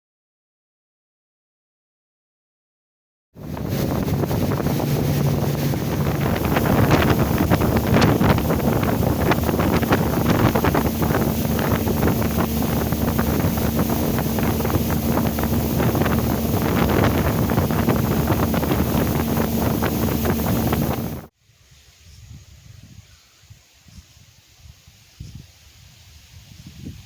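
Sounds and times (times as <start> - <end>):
steady low hum: 3.4 - 21.3
wind buffeting microphone: 3.4 - 21.3.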